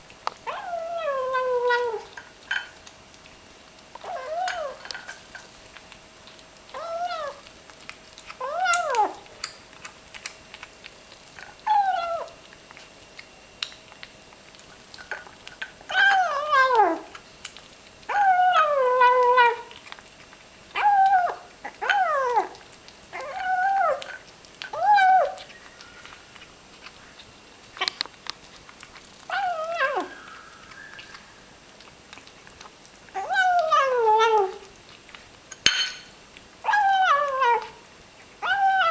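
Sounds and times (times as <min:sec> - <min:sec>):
kitten mewing growls while eating: 0:00.3 - 0:02.2, 0:04.0 - 0:05.2, 0:06.7 - 0:07.6, 0:08.3 - 0:09.4, 0:11.4 - 0:12.5, 0:15.1 - 0:17.2, 0:18.0 - 0:20.0, 0:20.7 - 0:34.9, 0:36.6 - 0:38.9.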